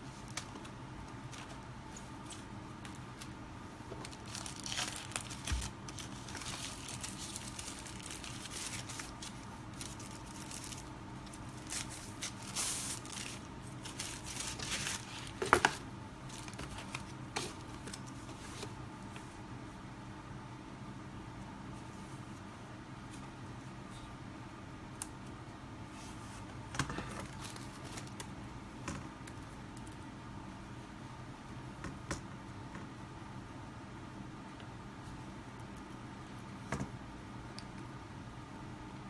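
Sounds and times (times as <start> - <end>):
packaging crinkling and rustling: 0.2 - 18.7, 26.8 - 28.3.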